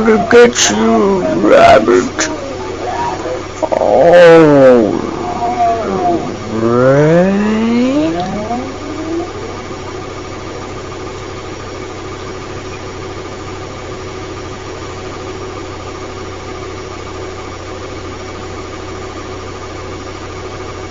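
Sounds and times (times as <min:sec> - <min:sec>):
steady machine hum: 0:00.0 - 0:14.7.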